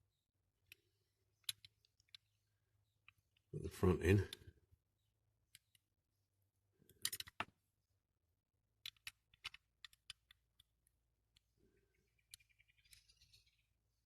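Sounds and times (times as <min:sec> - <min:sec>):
small toy parts clicking: 0:01.4 - 0:02.3, 0:06.9 - 0:07.5, 0:08.7 - 0:13.6.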